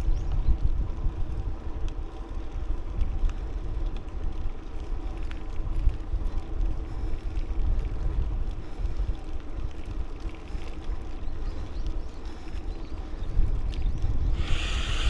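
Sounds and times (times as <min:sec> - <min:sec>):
wind buffeting microphone: 0:00.0 - 0:01.8, 0:11.2 - 0:15.0
bicycle hum: 0:00.0 - 0:15.0.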